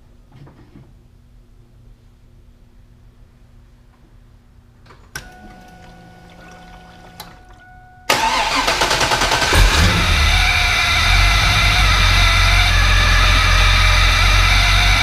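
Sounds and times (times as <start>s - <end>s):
engine starting and idling: 8.1s - 15.0s.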